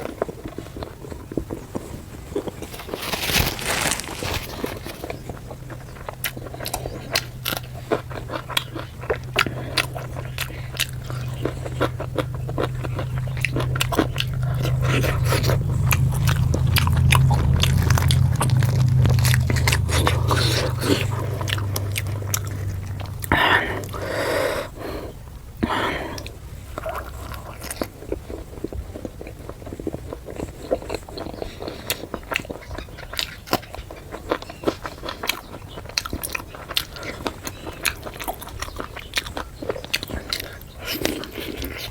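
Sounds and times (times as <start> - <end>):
chewing and biting food: 0.0 - 41.9
low hum: 2.8 - 27.3.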